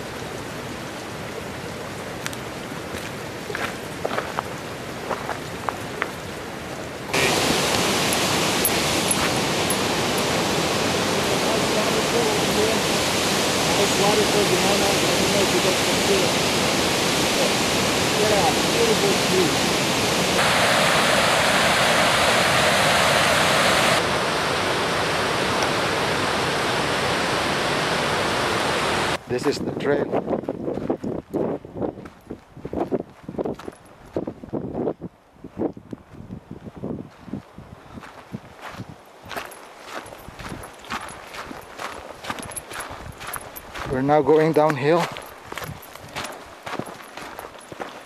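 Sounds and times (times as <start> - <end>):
waterfall rushing: 0.0 - 29.2
footsteps on rocky trail: 2.9 - 6.2, 8.7 - 9.9, 30.2 - 34.8, 35.6 - 48.0.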